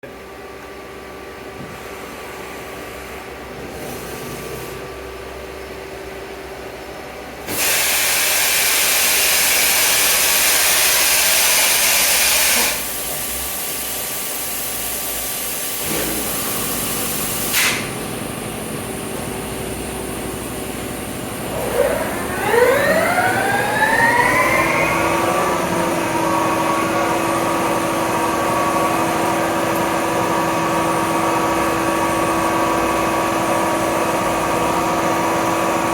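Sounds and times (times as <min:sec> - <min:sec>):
spindle whine and running hum: 0:15.8 - 0:35.9.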